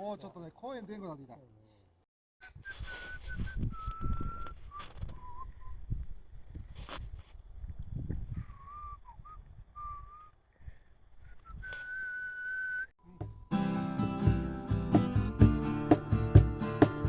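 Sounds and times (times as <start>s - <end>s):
thin whistled notes: 2.4s - 5.8s, 8.4s - 10.4s, 11.3s - 13.2s
acoustic guitar strumming chords: 13.1s - 17.0s.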